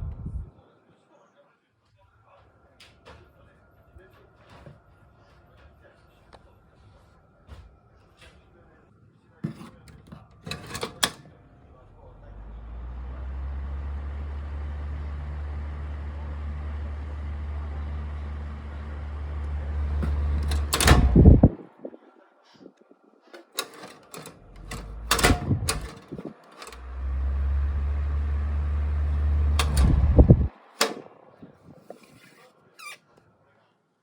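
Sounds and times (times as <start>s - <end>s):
ventilation fan humming: 9.4s - 22.0s, 23.3s - 32.9s
switch clicks: 29.6s - 31.0s.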